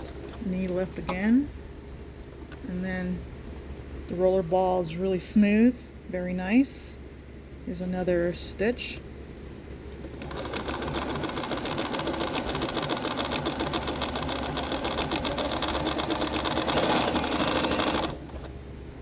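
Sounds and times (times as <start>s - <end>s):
sewing machine stitching: 10.1s - 18.6s.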